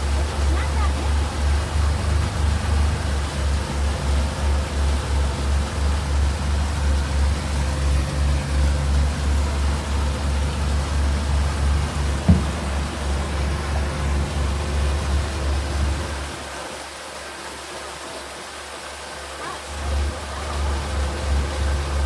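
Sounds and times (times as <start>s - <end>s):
motorboat engine rumbling: 0.0s - 16.9s, 19.3s - 22.0s
short knock: 12.2s - 13.3s.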